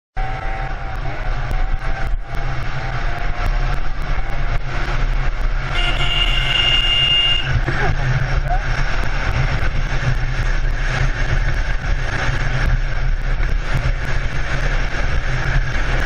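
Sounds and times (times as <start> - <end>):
motorcycle engine: 0.2 - 16.0
wind rumble on microphone: 0.2 - 16.0.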